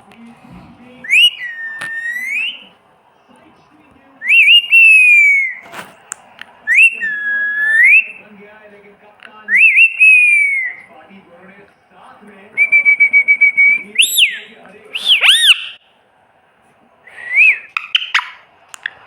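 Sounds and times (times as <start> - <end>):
parrot whistling: 1.0 - 2.7, 4.2 - 5.7, 6.7 - 8.2, 9.5 - 10.9, 12.6 - 15.8, 17.1 - 19.0.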